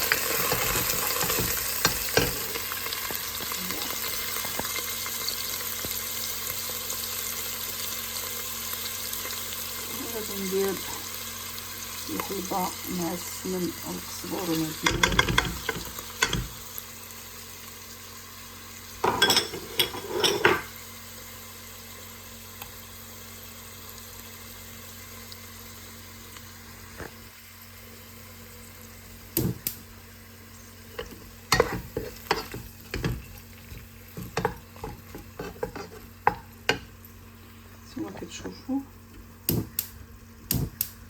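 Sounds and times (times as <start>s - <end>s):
utensil scraping a pan: 0.0s - 2.7s, 19.4s - 20.7s, 31.0s - 36.4s
food sizzling in oil: 0.0s - 41.0s.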